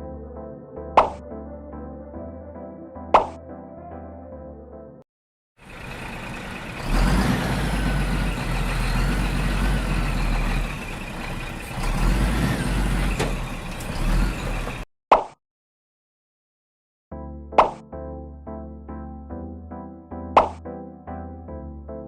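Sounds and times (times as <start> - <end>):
heavy engine rumbling: 5.6 - 14.8.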